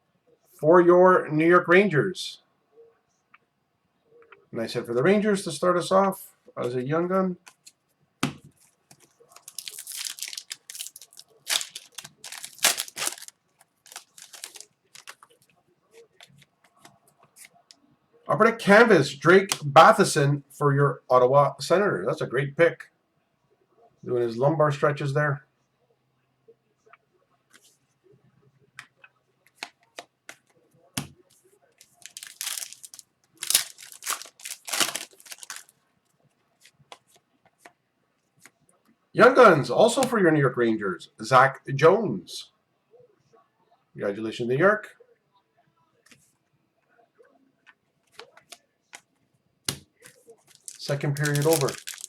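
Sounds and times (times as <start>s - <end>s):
wrapper and cards rustling: 8.6s - 15.4s, 31.8s - 35.7s, 50.4s - 52.0s.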